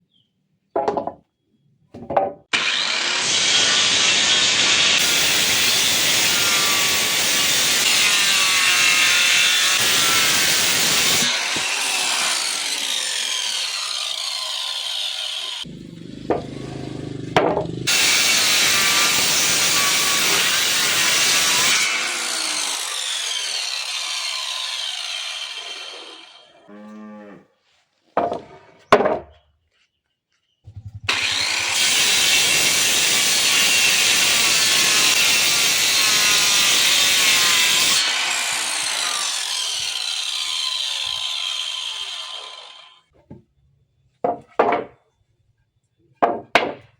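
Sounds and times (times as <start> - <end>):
saw cutting through wood: 2.5 - 26.6, 31.0 - 43.1.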